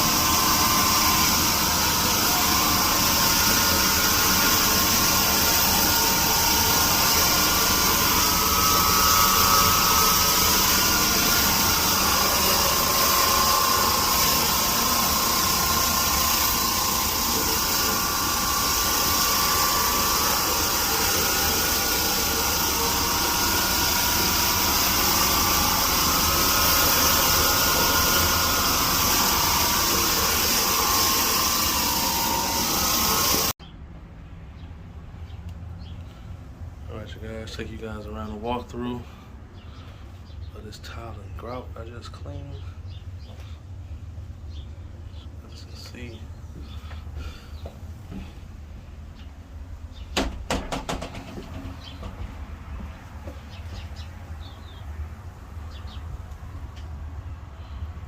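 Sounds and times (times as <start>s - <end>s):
floor-cleaning machine running: 0.0s - 33.6s.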